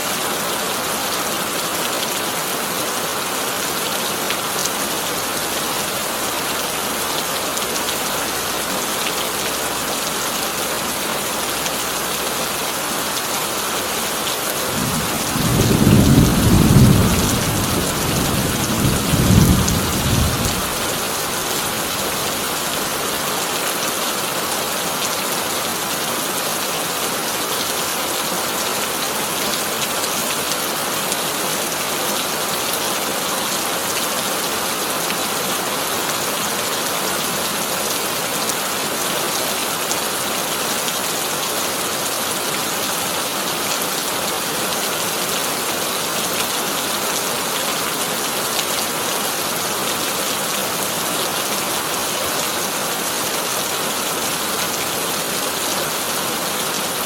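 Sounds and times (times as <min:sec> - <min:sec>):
heavy rain on a tin roof: 0:00.0 - 0:57.0
thunder rumble: 0:14.8 - 0:21.2.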